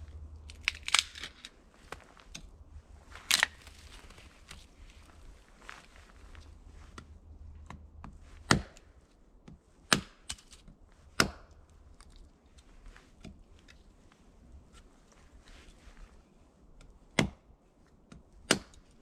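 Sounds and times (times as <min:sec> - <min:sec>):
axe chopping wood: 0:08.4 - 0:08.9, 0:09.9 - 0:10.3, 0:11.2 - 0:11.6, 0:17.2 - 0:17.4, 0:18.5 - 0:18.8.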